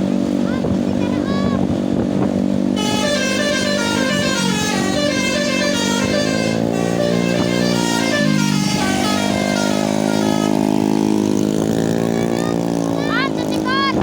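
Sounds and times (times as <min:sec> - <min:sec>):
multi-tone bus horn playing: 0:02.7 - 0:12.4.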